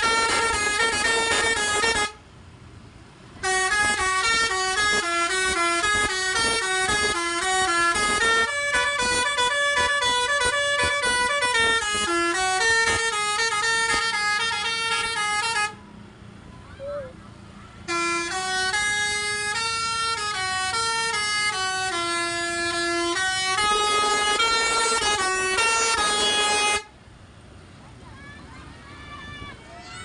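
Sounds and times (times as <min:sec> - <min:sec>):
bus air horns playing a tune: 0:00.0 - 0:02.2, 0:03.4 - 0:15.8, 0:17.8 - 0:27.0.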